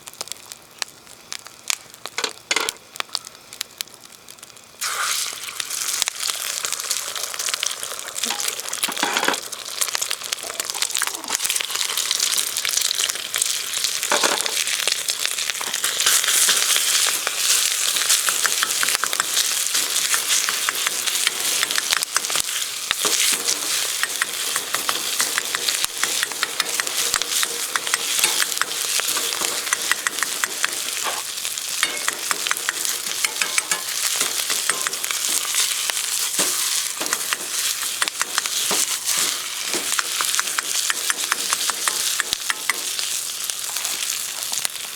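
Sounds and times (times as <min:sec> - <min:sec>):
rice sizzling in a wok: 0:00.0 - 0:44.9
utensil scraping and tapping pan: 0:15.6 - 0:43.1.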